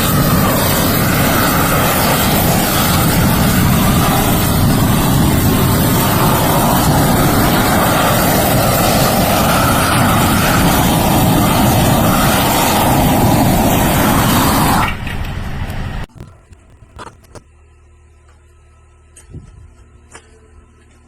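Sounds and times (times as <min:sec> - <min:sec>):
gas torch burning: 0:00.0 - 0:17.4.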